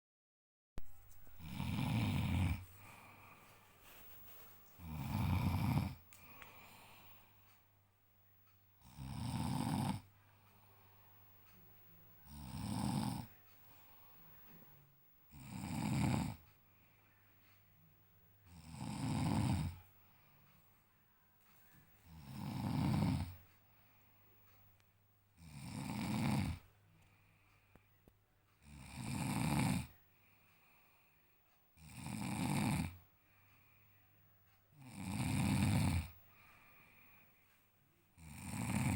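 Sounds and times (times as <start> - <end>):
quiet breathing: 0.8 - 38.9
man snoring: 1.4 - 3.2, 4.8 - 6.7, 8.8 - 10.1, 12.2 - 13.3, 15.3 - 16.4, 18.5 - 19.8, 22.0 - 23.4, 25.4 - 26.6, 28.6 - 30.0, 31.8 - 33.0, 34.8 - 36.2, 38.2 - 38.9.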